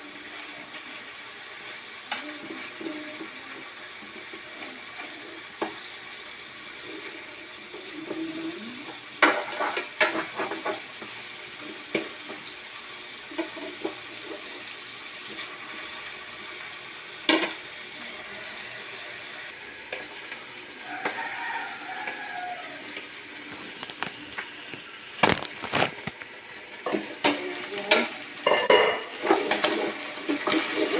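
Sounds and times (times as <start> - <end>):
food sizzling in oil: 0.0 - 30.9.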